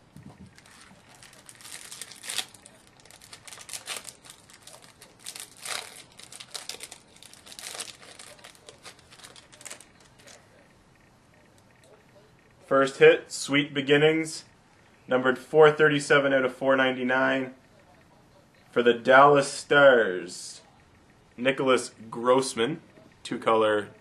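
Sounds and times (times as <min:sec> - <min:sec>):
plastic wrapping crinkling: 0:00.3 - 0:10.6
plastic wrapping ripping: 0:00.5 - 0:10.4.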